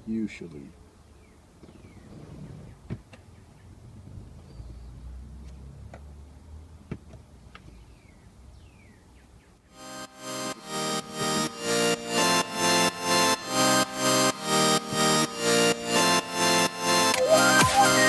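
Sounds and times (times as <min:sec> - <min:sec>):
background music: 0:09.8 - 0:18.0.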